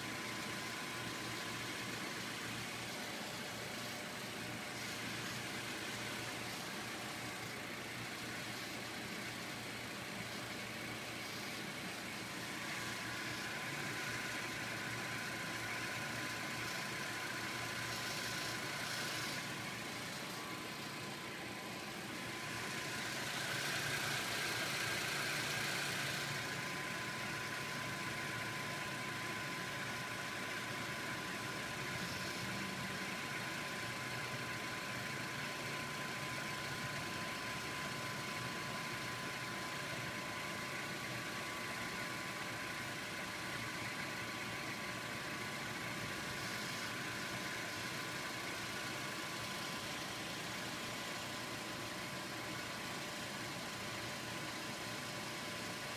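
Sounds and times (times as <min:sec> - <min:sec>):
car engine idling: 0:00.0 - 0:55.9.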